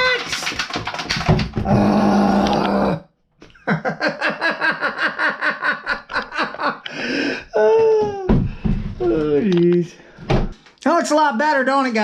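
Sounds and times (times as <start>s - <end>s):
man laughing: 3.5s - 8.2s.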